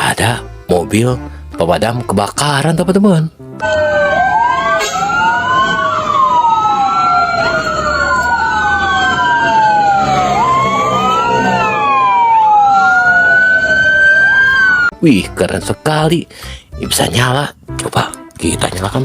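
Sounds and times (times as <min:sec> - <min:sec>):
fire engine sirens wailing: 0:03.6 - 0:15.0.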